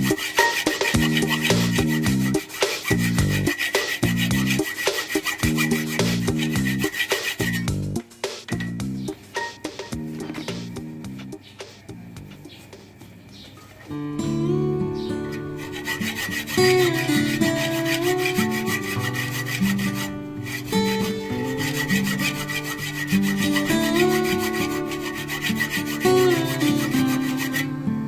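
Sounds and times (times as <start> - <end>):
saw cutting through metal: 0.0 - 7.7, 15.3 - 27.7
guitar music: 0.0 - 12.6, 13.9 - 28.0.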